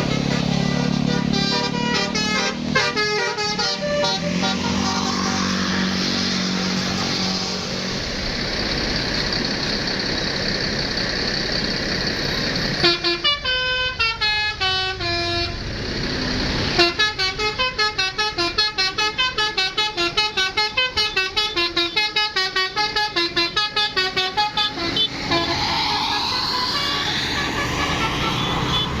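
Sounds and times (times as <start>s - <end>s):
bus musical horn playing tune: 0.0s - 8.0s, 12.8s - 15.6s, 16.7s - 29.0s
bus engine running: 0.0s - 29.0s.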